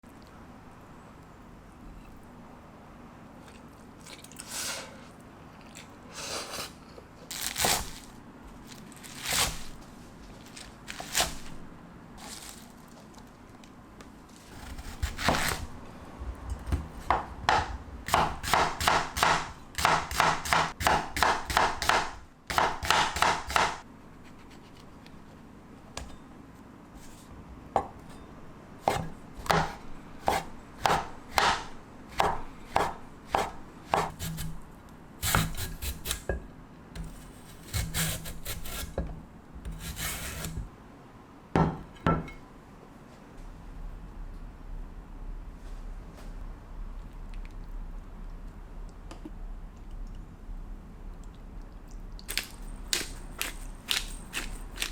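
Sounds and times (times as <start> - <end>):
knife chopping vegetables on board: 14.6 - 15.7, 16.7 - 23.8, 28.8 - 34.6, 35.2 - 36.4.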